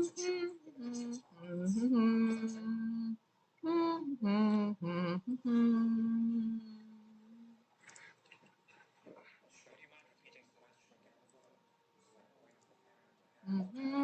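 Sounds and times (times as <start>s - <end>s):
woman singing wordless tune: 0.0s - 7.6s, 13.5s - 14.0s.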